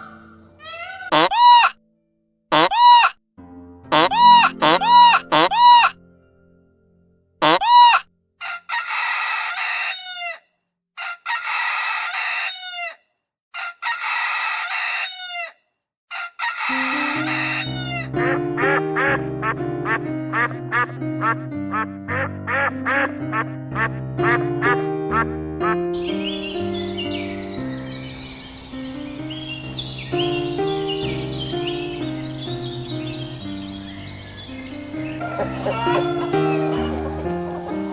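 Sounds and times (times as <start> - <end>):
fowl calling: 0.0 - 1.8, 2.5 - 3.1, 3.9 - 5.9, 7.4 - 10.3, 16.1 - 37.9.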